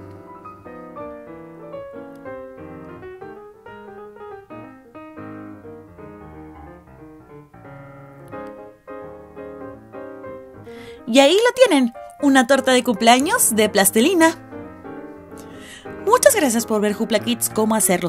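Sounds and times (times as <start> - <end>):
light piano tune: 0.0 - 18.0.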